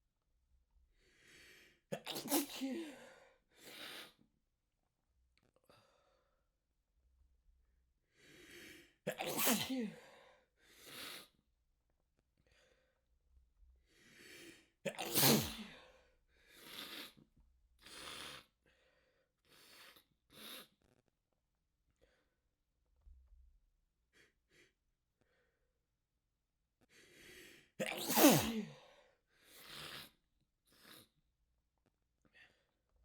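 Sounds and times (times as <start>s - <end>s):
person breathing: 1.0s - 1.8s
person sneezing: 2.0s - 3.2s, 9.1s - 10.1s, 14.9s - 15.8s, 27.8s - 28.9s.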